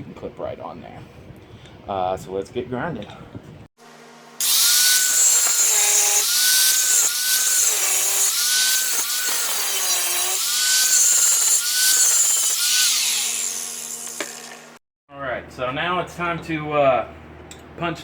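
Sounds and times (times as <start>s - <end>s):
electric grinder grinding metal: 4.4s - 14.8s.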